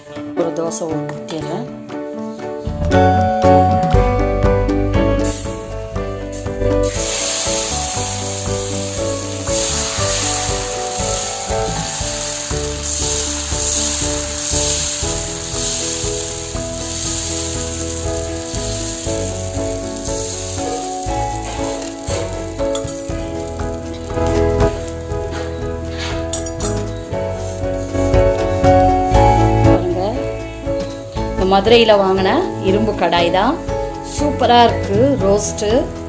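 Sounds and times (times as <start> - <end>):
background music: 0.0 - 36.0
batter sizzling on a hot pan: 6.4 - 26.4.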